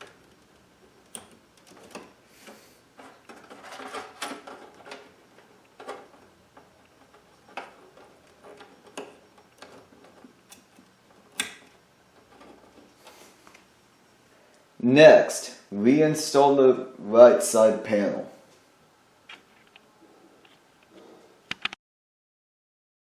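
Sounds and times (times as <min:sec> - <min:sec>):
cables rustling: 0:00.0 - 0:13.7.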